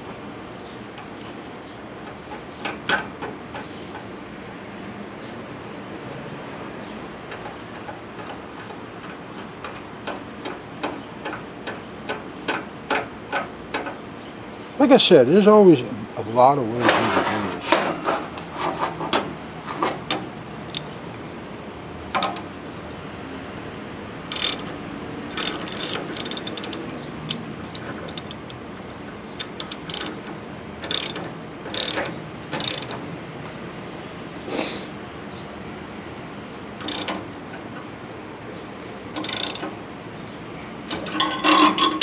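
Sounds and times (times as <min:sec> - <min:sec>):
ratchet wrench clicking: 0:24.3 - 0:28.6, 0:29.4 - 0:33.0, 0:36.8 - 0:37.2, 0:39.2 - 0:39.7.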